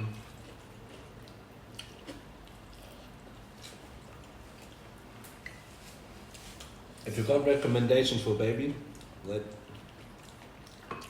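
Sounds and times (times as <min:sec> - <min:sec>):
wet mouth eating sounds: 0:00.0 - 0:05.7, 0:08.8 - 0:11.0.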